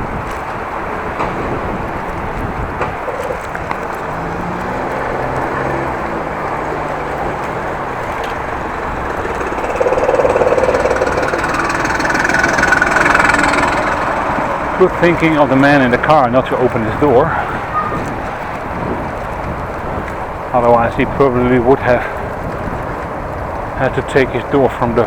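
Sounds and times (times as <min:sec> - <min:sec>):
wind rush: 0:00.0 - 0:25.0
car engine running: 0:01.0 - 0:17.1.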